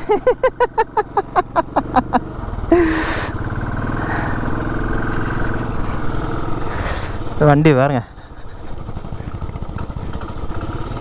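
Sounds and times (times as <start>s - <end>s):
motorcycle engine starting and idling: 0.0s - 11.0s.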